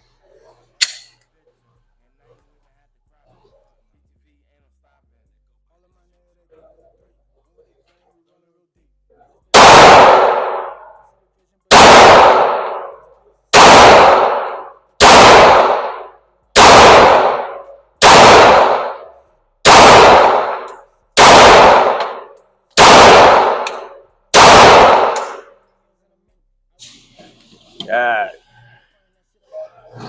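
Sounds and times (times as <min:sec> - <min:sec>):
pistol shots echoing: 0:09.5 - 0:11.1, 0:11.7 - 0:25.6.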